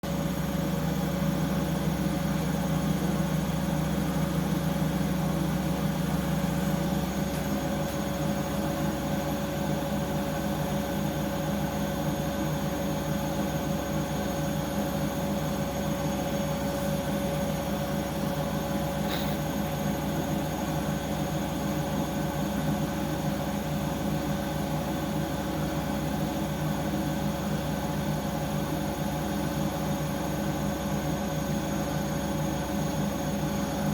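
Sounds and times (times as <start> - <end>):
washing machine running: 0.0 - 33.9.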